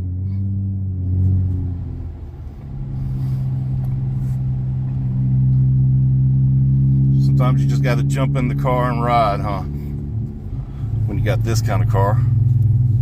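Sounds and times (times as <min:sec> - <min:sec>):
car engine and exhaust drone: 0:00.0 - 0:13.0.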